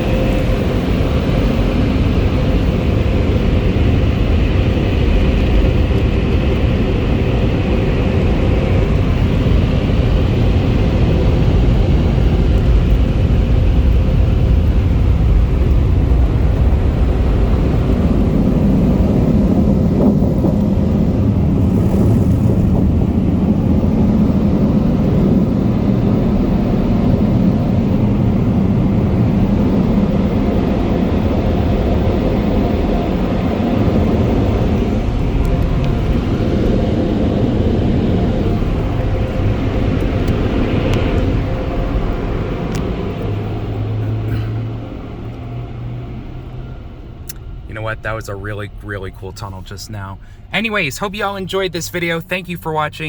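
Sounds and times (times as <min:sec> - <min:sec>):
car wash air dryers blowing: 0:46.8 - 0:53.0.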